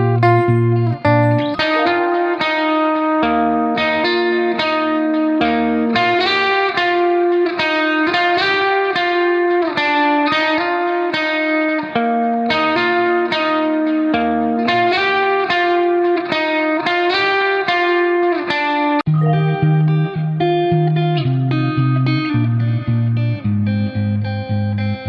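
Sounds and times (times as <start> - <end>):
rhythmic bass line: 0.0 - 2.2
plucked guitar music: 0.0 - 25.0.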